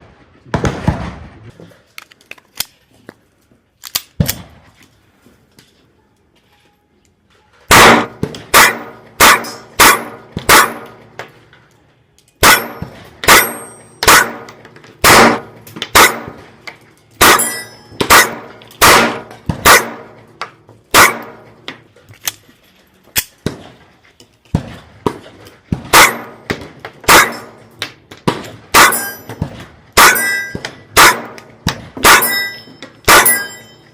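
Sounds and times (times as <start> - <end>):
airsoft pistol shots: 7.7 - 11.0, 12.4 - 16.5, 17.2 - 20.2, 20.9 - 21.5, 25.8 - 27.6, 28.3 - 33.6.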